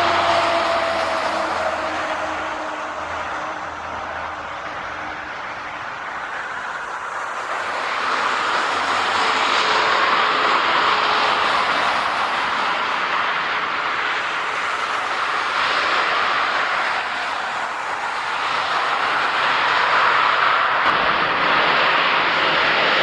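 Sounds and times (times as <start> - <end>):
jet engines running: 0.0 - 23.0.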